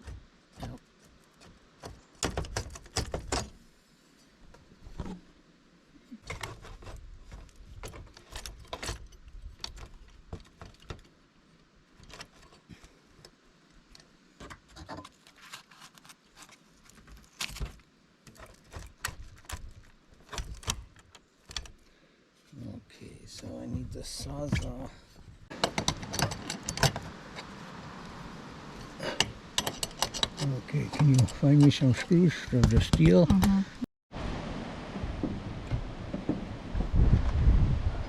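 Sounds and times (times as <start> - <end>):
metal parts clinking and rattling: 25.5 - 27.0, 29.6 - 31.8.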